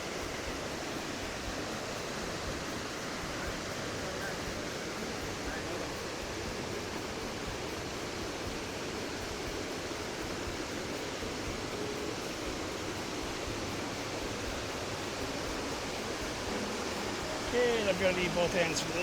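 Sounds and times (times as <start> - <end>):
waterfall roaring: 10.8 - 19.0.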